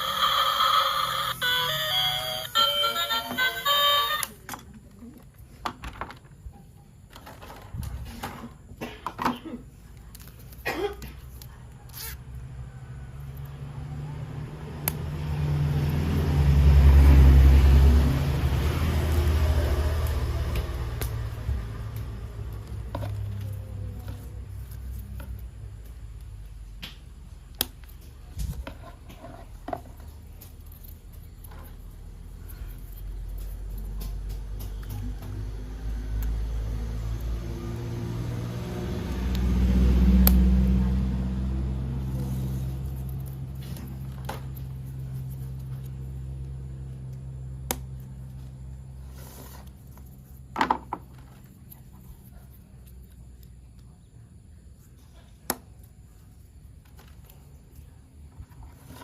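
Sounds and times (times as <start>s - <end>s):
toy train electric motor humming: 0.0s - 4.4s.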